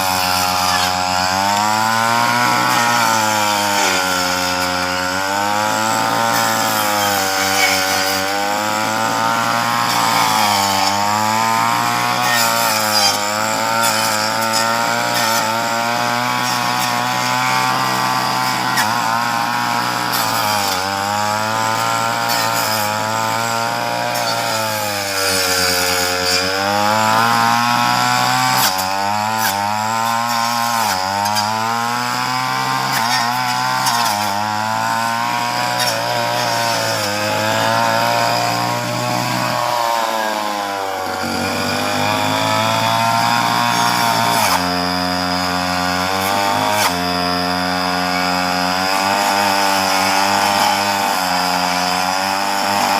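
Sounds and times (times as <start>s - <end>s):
chainsaw cutting branches: 0.0s - 52.9s.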